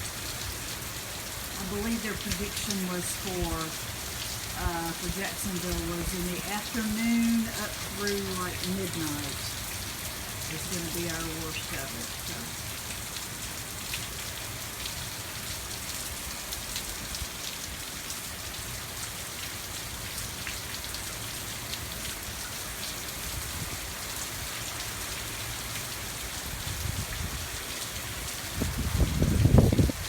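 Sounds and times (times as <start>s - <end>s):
heavy rain hissing: 0.0s - 17.4s
drips ticking: 1.5s - 12.6s
wind buffeting microphone: 26.5s - 27.6s, 28.5s - 30.0s.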